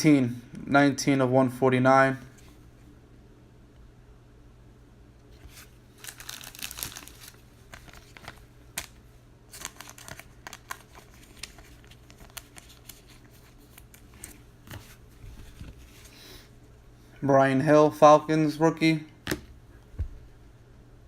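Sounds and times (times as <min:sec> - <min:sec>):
plastic wrapping crinkling: 0:05.4 - 0:16.2.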